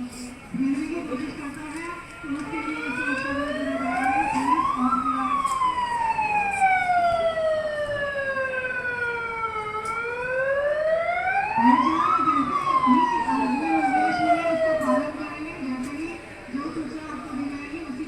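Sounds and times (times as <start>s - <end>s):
wailing emergency siren: 2.2s - 15.6s.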